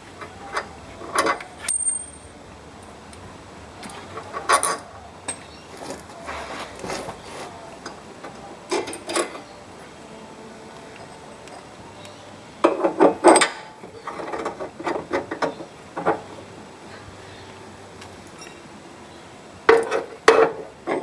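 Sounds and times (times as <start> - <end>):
metal parts clinking and knocking: 0.2 - 2.3, 12.6 - 16.3.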